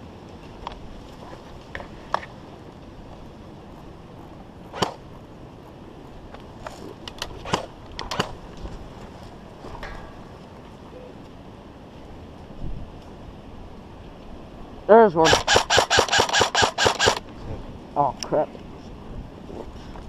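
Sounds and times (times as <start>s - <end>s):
airsoft gun shots cracking: 4.7s - 5.0s, 15.2s - 17.2s.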